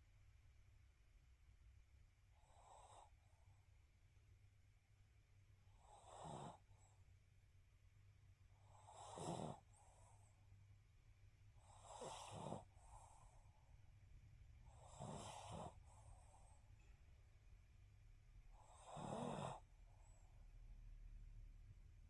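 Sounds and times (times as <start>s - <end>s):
faint snoring: 2.3s - 3.7s, 5.6s - 7.0s, 8.5s - 10.5s, 11.5s - 13.7s, 14.6s - 16.7s, 18.5s - 20.5s.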